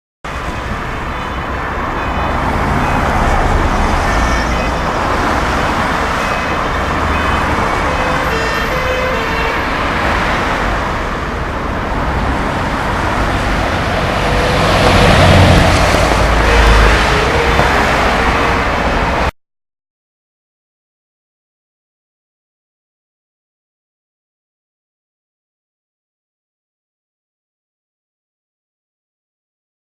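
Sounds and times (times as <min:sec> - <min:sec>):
road noise: 0:00.2 - 0:19.4
fire engine engine: 0:00.3 - 0:19.3.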